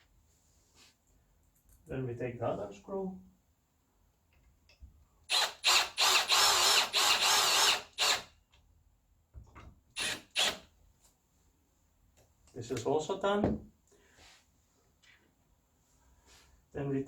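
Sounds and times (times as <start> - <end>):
drill driving screw: 5.3 - 8.4, 10.0 - 10.7.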